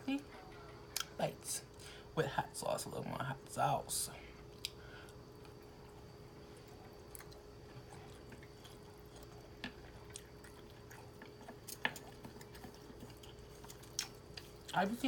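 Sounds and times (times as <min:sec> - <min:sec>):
faint steady hum: 0:00.0 - 0:15.0
close chewing mouth sounds: 0:04.5 - 0:14.8.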